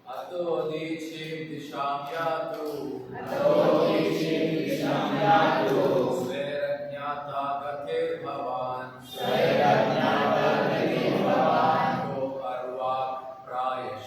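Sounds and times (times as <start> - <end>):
group of voices chanting: 3.1 - 6.3, 9.1 - 12.2.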